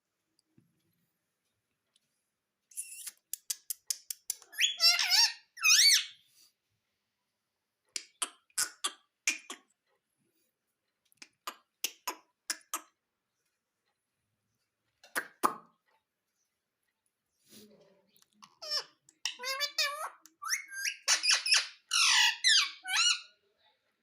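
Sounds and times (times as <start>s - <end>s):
parrot screeching calls: 4.5s - 6.2s, 18.6s - 23.3s.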